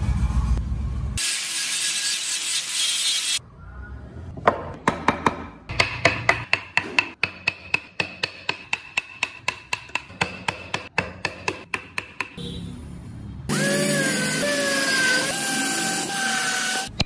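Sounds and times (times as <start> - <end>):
hammer tapping chisel into wood: 4.8 - 12.4.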